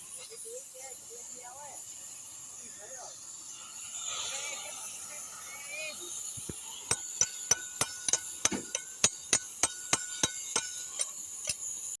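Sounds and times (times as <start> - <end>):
hammer striking steel: 6.4 - 11.9.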